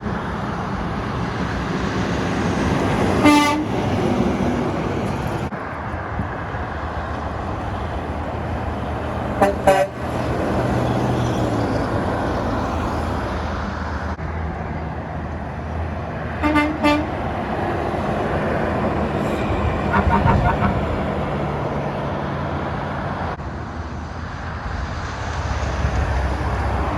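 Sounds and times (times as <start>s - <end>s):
heavy road traffic roar: 0.0s - 26.9s
car horn toots: 3.2s - 3.8s, 9.4s - 10.0s, 16.4s - 17.1s, 19.2s - 21.0s.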